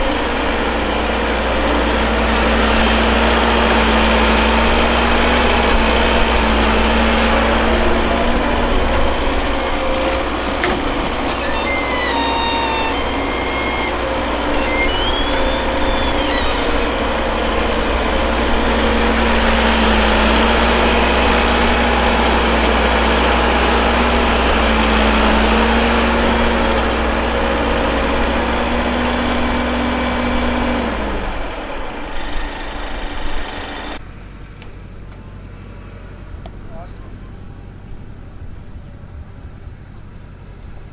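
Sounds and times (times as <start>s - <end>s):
heavy diesel engine running: 0.0s - 40.9s
high rising and falling tone: 10.7s - 18.6s.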